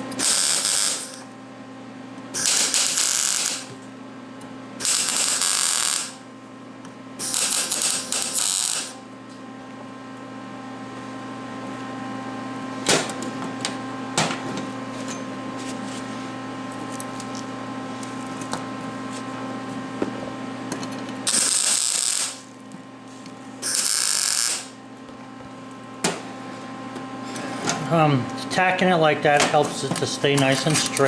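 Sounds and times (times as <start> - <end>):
arc welder humming: 0.0 - 31.0
welding crackling bursts: 0.2 - 1.2, 2.4 - 3.7, 4.8 - 6.2, 7.2 - 9.0, 21.3 - 22.5, 23.6 - 24.8.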